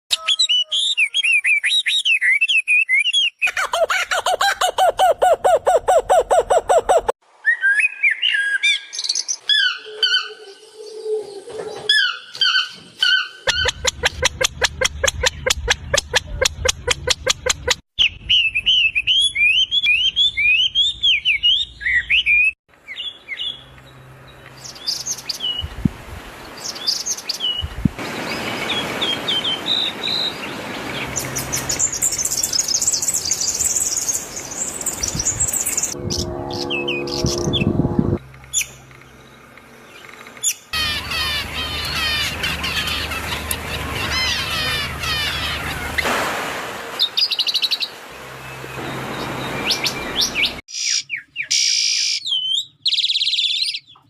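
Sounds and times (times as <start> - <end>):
birds singing and chirping: 26.4 - 46.0, 47.0 - 54.0.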